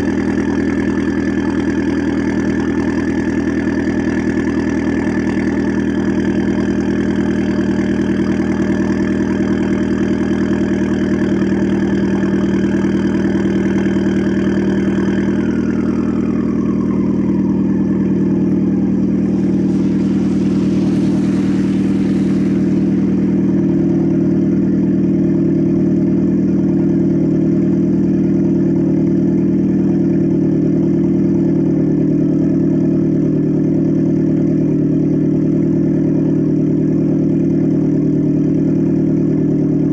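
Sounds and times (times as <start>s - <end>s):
high whine: 0.0s - 34.7s
car engine idling: 0.0s - 39.9s
brief hiss: 19.1s - 24.5s.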